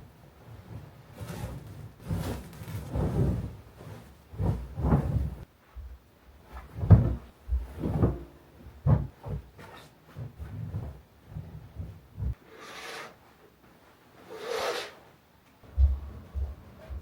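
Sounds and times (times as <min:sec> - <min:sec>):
rubbing: 0:00.6 - 0:05.5
thuds and knocks: 0:06.6 - 0:09.6, 0:15.7 - 0:17.0.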